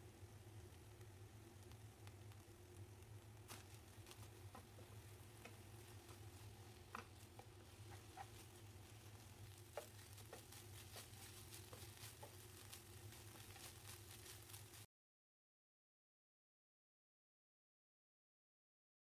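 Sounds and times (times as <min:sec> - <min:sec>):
low steady hum: 0:00.0 - 0:14.9
faint light clicks and taps: 0:00.7 - 0:08.6.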